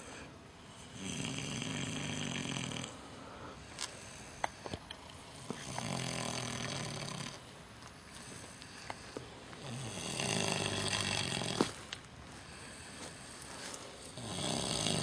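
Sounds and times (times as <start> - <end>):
quiet breathing: 0.0 - 15.0
pig snoring loudly: 0.7 - 3.0, 5.4 - 7.4, 9.6 - 11.8, 14.1 - 15.0.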